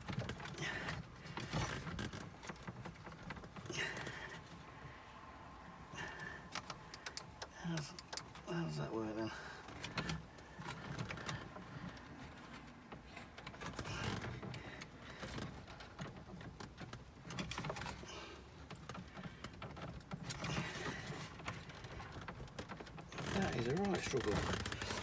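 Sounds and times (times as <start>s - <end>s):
plastic parts clicking and tapping: 18.6s - 25.0s.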